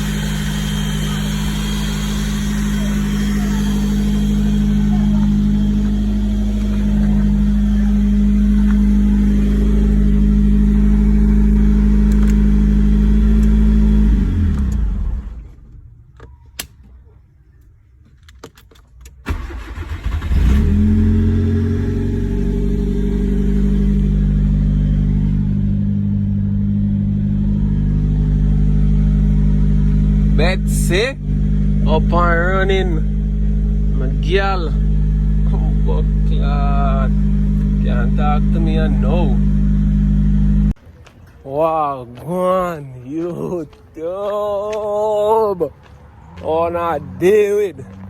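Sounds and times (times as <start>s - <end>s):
engine winding down: 0.0s - 16.0s, 19.3s - 40.8s
car engine idling: 0.0s - 17.7s, 19.3s - 48.0s
engine clicks: 14.4s - 20.7s
engine cranking and starting: 18.5s - 22.3s.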